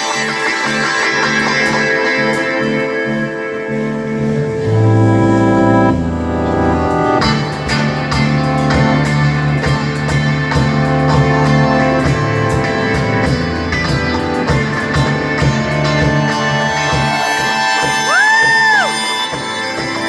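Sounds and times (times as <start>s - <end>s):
electric guitar playing: 0.0s - 20.0s
steady drum beat: 6.8s - 20.0s.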